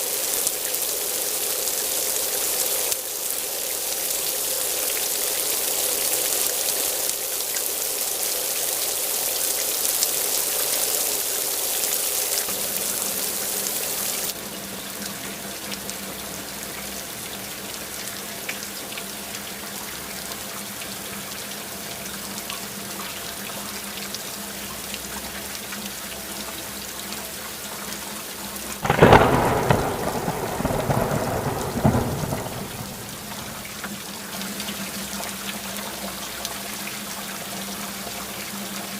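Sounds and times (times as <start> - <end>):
rain hissing: 0.0 - 14.4, 28.6 - 34.5
thunderclap rumbling: 28.8 - 33.8.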